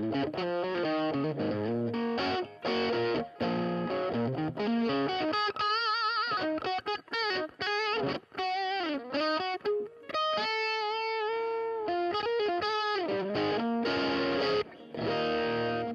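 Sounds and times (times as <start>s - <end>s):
distorted electric guitar lead: 0.0s - 15.9s.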